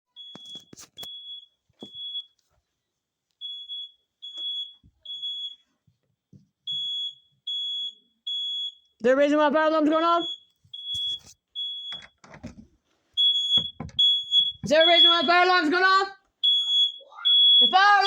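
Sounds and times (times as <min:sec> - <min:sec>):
smoke alarm beeping: 0:00.1 - 0:02.4, 0:03.4 - 0:05.7, 0:06.6 - 0:09.0, 0:10.0 - 0:12.2, 0:13.2 - 0:18.0.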